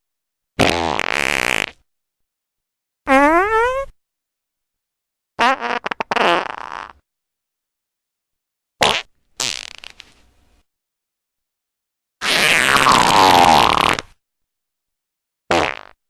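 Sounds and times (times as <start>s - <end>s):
fart sounds: 0.6s - 1.9s, 3.1s - 4.0s, 5.4s - 7.1s, 8.8s - 10.2s, 12.2s - 14.2s, 15.5s - 16.0s.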